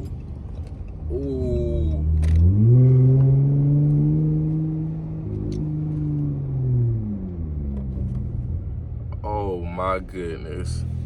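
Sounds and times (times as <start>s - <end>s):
car engine revving: 1.1s - 9.0s.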